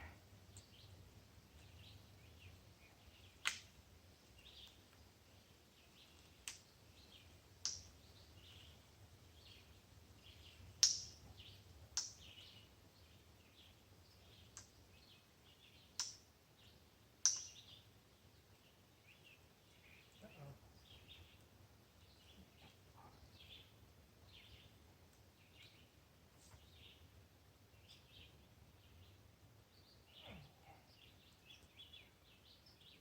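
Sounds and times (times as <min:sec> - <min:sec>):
faint bird chirps: 0:16.6 - 0:24.8, 0:27.8 - 0:33.0.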